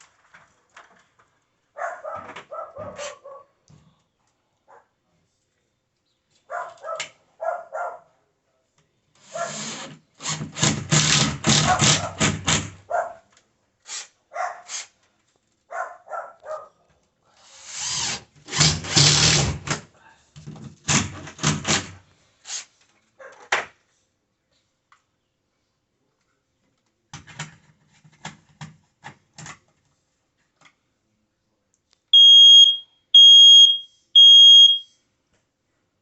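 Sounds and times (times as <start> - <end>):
dog barking: 1.8 - 3.6, 4.7 - 5.0, 6.5 - 8.2, 9.3 - 9.6, 11.6 - 12.2, 12.9 - 13.3, 14.3 - 14.7, 15.7 - 16.8, 23.2 - 23.5
power drill running: 9.5 - 12.6, 17.5 - 19.6.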